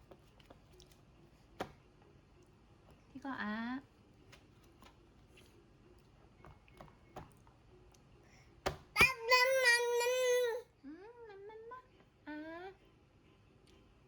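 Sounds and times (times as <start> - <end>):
baby high vocal sound: 9.0 - 10.6.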